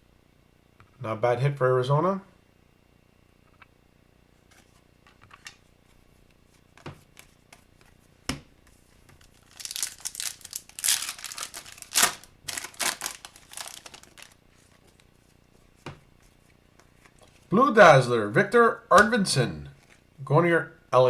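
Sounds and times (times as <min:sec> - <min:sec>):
foil wrapper crinkling: 0:09.1 - 0:15.2.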